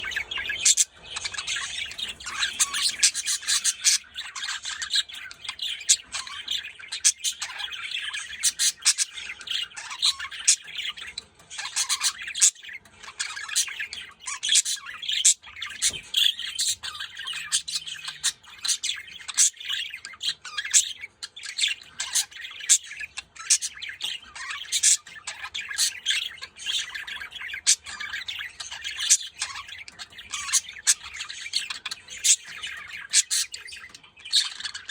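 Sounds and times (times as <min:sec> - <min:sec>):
budgerigars chattering: 0:00.0 - 0:34.9.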